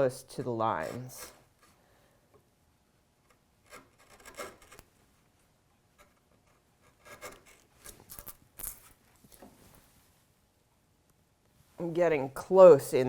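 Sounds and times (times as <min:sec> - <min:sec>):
chisel scraping wood: 0:00.8 - 0:01.8, 0:03.2 - 0:04.9, 0:06.0 - 0:08.9.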